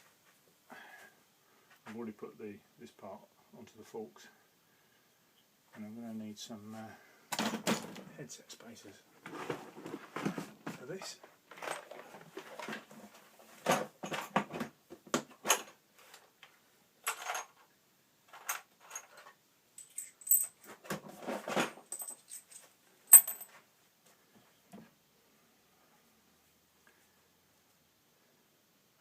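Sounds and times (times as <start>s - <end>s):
metal bicycle parts clinking: 21.9s - 23.5s.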